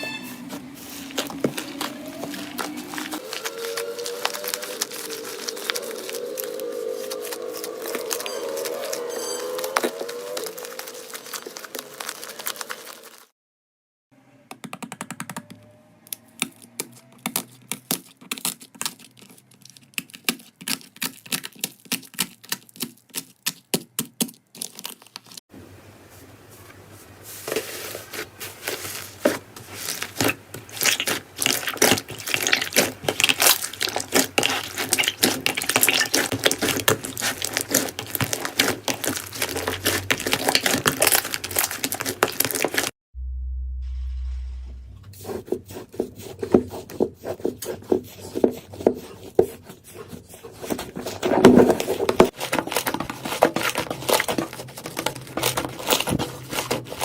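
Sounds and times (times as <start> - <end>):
slime crackling and popping: 0.8 - 13.3, 29.7 - 42.9.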